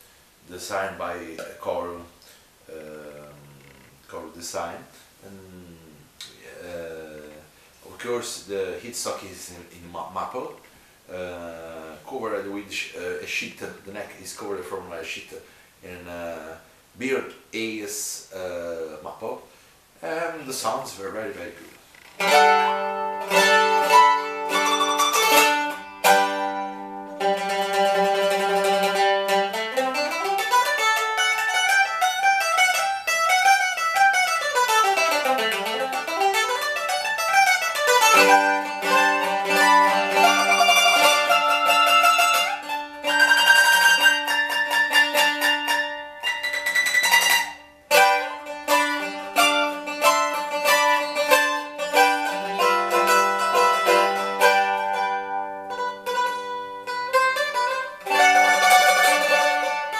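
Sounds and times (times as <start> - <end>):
mandolin playing: 0.6 - 2.0, 5.4 - 10.3, 20.0 - 59.9.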